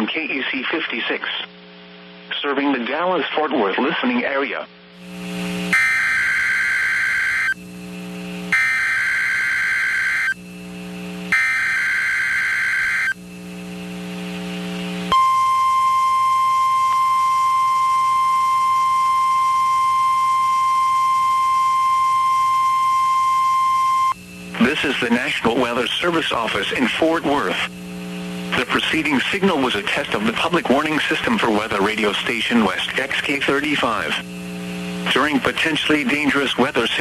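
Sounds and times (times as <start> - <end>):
low buzz: 4.9 - 30.7, 34.2 - 35.2
screeching digital header bursts: 5.7 - 7.6, 8.5 - 10.4, 11.3 - 13.2
steady warning alarm tone: 5.7 - 7.7, 8.5 - 10.4, 11.3 - 13.3, 15.1 - 26.2.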